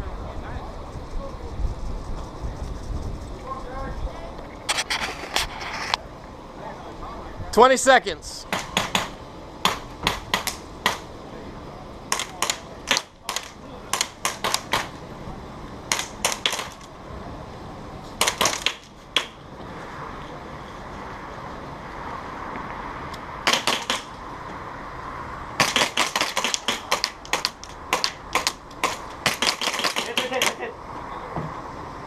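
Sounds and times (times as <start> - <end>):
airsoft guns firing rapid snaps: 8.5 - 11.1, 12.1 - 15.0, 15.9 - 16.9, 18.2 - 19.4, 23.4 - 24.1, 25.6 - 30.6.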